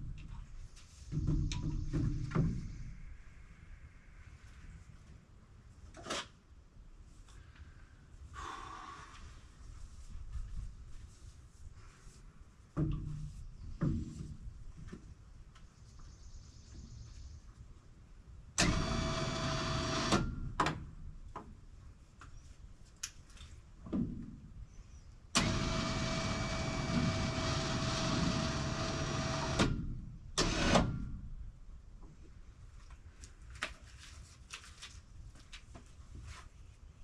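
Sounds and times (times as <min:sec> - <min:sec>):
winch motor whining: 0:25.4 - 0:29.7.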